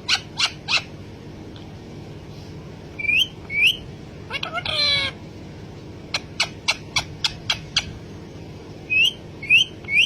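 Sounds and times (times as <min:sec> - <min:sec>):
parrot chirping: 0:00.0 - 0:01.0, 0:03.0 - 0:05.2, 0:06.1 - 0:08.0, 0:08.9 - 0:10.0.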